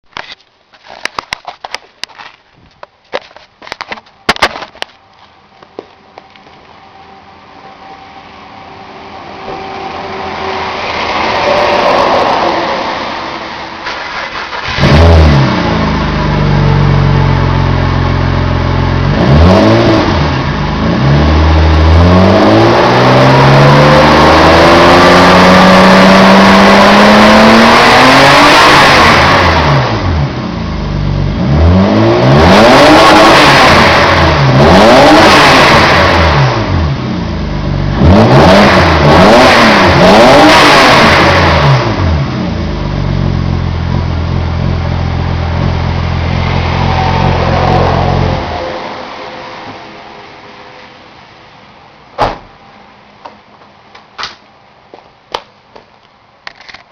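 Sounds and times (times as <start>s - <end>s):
car engine revving: 6.8s - 52.2s.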